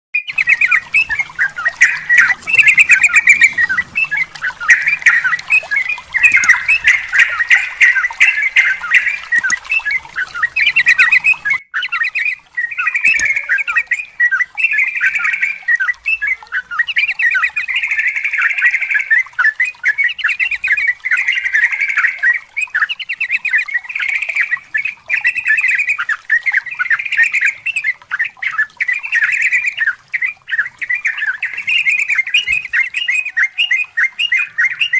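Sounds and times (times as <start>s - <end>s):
bird singing chattering notes: 0.2s - 34.9s.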